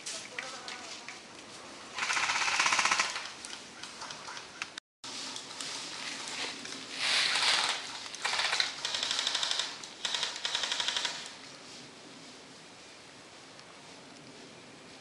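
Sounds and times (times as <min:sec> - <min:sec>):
airsoft guns firing bursts: 0:02.0 - 0:03.3, 0:07.3 - 0:11.3.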